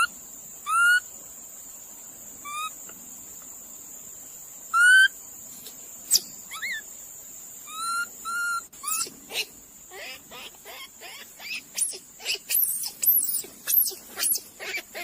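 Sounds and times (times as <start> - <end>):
small animal squeaks and chirps: 0.7 - 1.1, 2.4 - 2.8, 4.7 - 5.1, 6.1 - 6.9, 7.6 - 15.0
whistled calls: 4.7 - 5.1.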